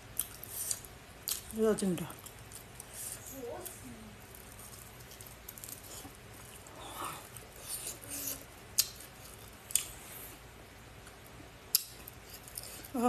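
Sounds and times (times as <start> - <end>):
wet crackly chewing: 0.1 - 10.4.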